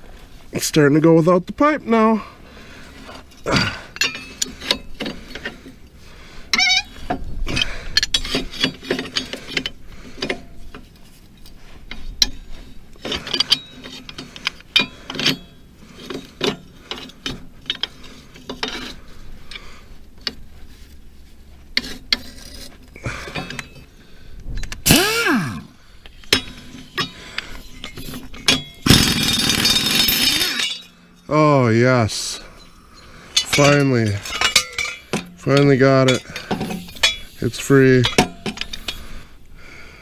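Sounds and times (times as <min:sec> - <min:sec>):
wrench clanking on metal: 0:03.3 - 0:05.6, 0:13.0 - 0:19.6, 0:21.8 - 0:23.9, 0:26.2 - 0:31.3, 0:32.2 - 0:39.1.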